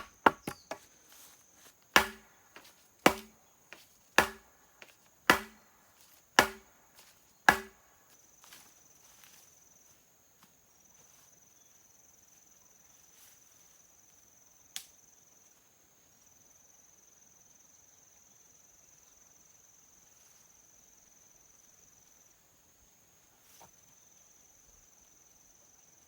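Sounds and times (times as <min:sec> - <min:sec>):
heavy chopping blows on wood: 0:00.0 - 0:00.8, 0:02.0 - 0:03.4, 0:04.2 - 0:04.5, 0:05.3 - 0:05.6, 0:06.4 - 0:06.8, 0:07.5 - 0:07.8
insect trill: 0:00.0 - 0:26.0.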